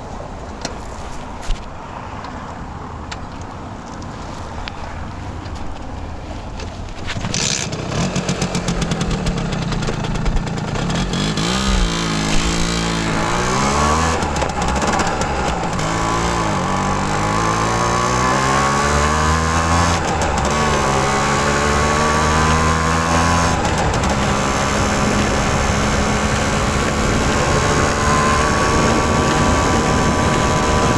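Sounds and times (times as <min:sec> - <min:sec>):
moped engine accelerating: 0:07.0 - 0:30.9.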